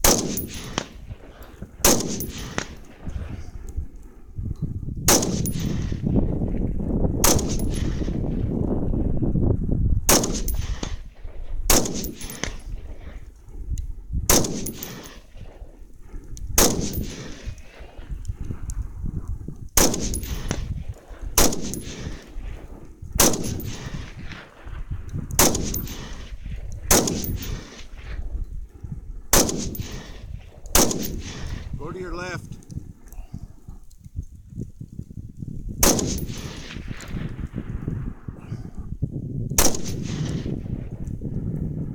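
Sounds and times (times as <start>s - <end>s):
rifle shots with echo: 0.0s - 3.5s, 5.1s - 6.2s, 7.2s - 8.6s, 10.1s - 13.3s, 14.3s - 15.9s, 16.6s - 18.2s, 19.8s - 28.3s, 29.3s - 32.4s, 35.8s - 37.6s, 39.6s - 41.0s.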